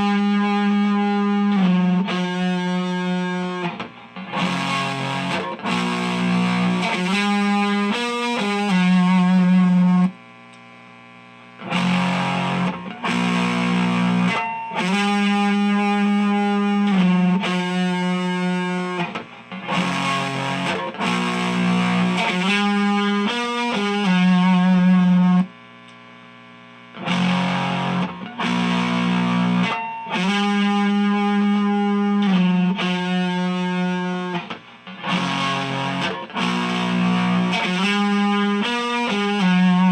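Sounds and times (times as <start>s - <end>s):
distorted electric guitar riff: 0.0s - 39.9s.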